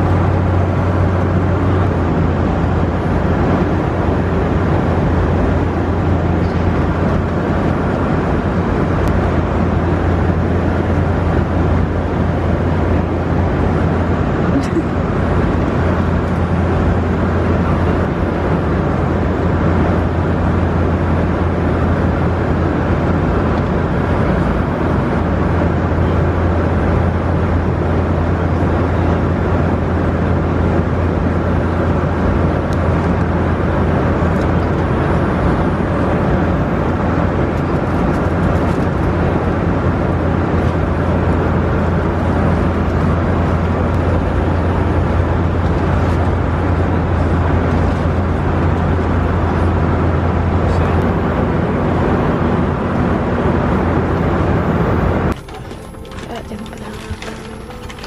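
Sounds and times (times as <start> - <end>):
airliner cabin drone: 0.0 - 58.0.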